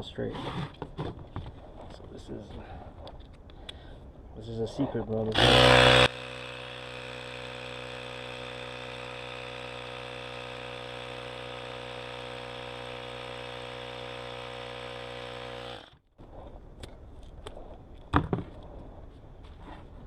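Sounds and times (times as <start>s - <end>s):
air compressor running: 5.3s - 16.0s.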